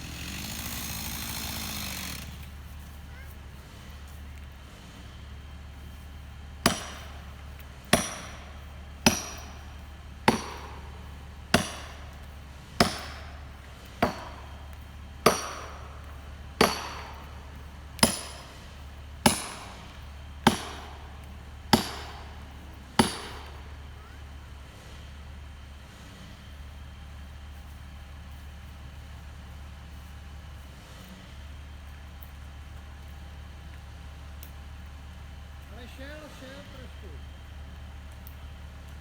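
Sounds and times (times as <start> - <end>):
low steady hum: 2.2 - 30.6.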